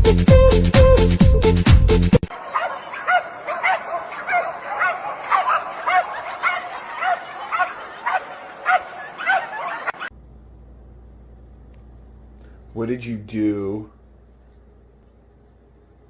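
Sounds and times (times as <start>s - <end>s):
dog yipping: 2.4s - 10.1s.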